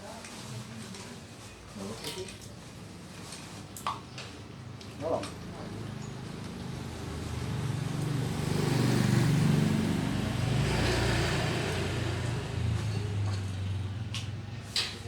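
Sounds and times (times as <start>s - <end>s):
motorcycle engine revving and idling: 5.8s - 14.6s.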